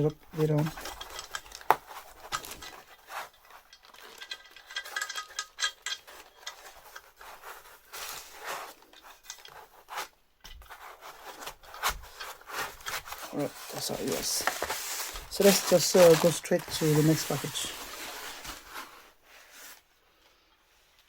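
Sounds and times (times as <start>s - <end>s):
packaging rustling: 0.0s - 10.1s, 10.7s - 19.9s
metal parts clicking: 0.6s - 7.3s.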